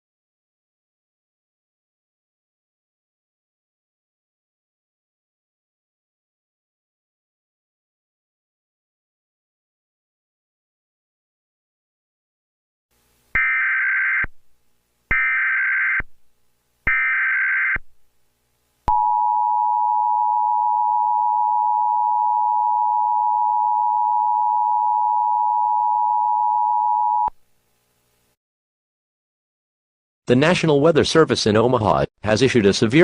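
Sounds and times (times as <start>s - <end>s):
steady high attention tone: 18.9s - 27.3s.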